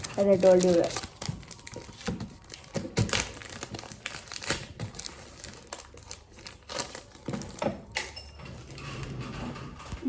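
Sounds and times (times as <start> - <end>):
packaging crinkling: 0.0 - 8.0.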